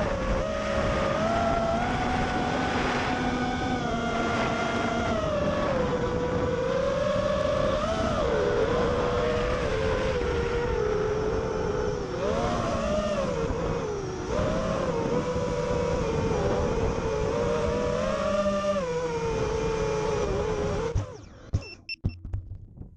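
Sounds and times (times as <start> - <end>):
drone motors whining: 0.0 - 22.6
short high beeps: 21.6 - 22.3.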